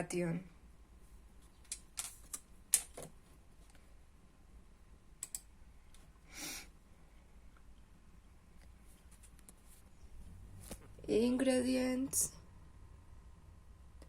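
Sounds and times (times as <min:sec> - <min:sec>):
sharp clicks: 0:05.2 - 0:05.5.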